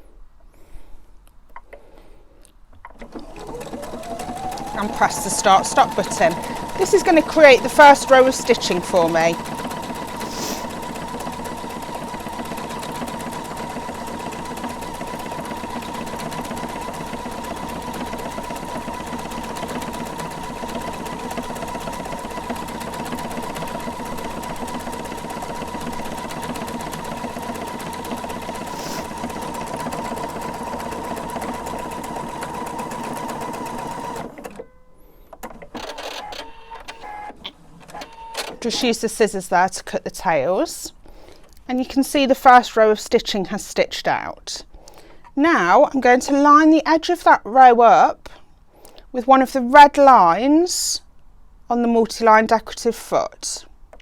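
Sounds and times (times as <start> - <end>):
sewing machine stitching: 2.8 - 34.7.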